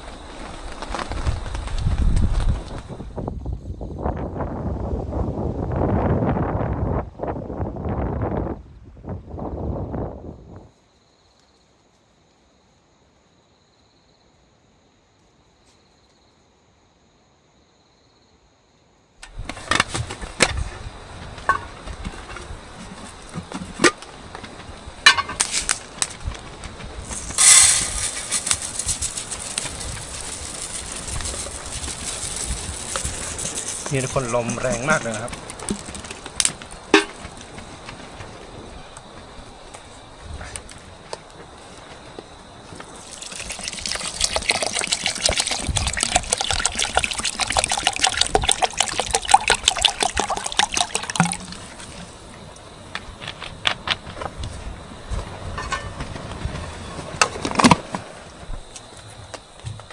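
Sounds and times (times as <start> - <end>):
strong wind gusting: 0.0 - 10.7, 25.8 - 58.7
strong wind rushing: 1.1 - 10.7, 43.2 - 52.2
sharp knocks and rustles: 19.2 - 38.6, 52.9 - 59.9.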